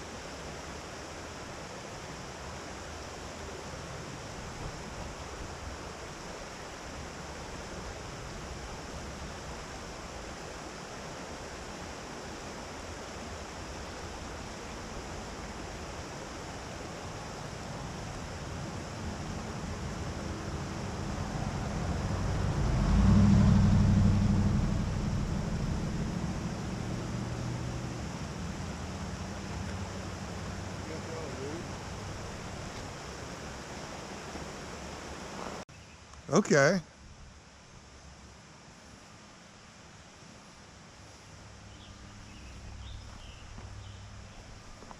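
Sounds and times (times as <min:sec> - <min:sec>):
steady rushing noise: 0:00.0 - 0:35.6
engine humming: 0:18.8 - 0:35.6.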